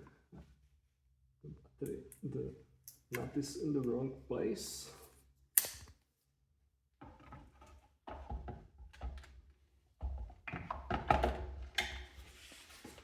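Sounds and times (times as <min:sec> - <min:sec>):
battery clicking into mount: 0:05.6 - 0:05.9.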